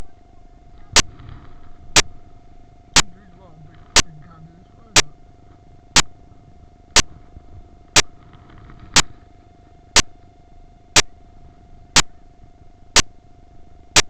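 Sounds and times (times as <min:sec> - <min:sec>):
faint steady tone: 0:00.0 - 0:14.0
sharp ticking clicks: 0:03.0 - 0:03.3, 0:04.0 - 0:04.2, 0:05.0 - 0:05.2, 0:06.0 - 0:06.2, 0:10.0 - 0:10.2, 0:12.0 - 0:12.2, 0:13.0 - 0:13.2.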